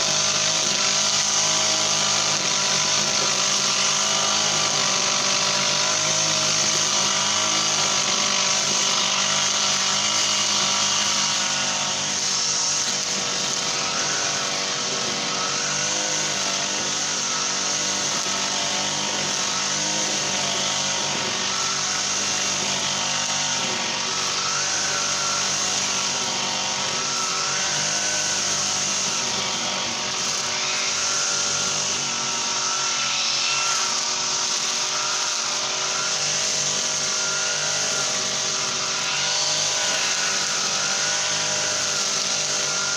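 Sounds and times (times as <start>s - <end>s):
brush cutter engine running: 0.0s - 42.9s.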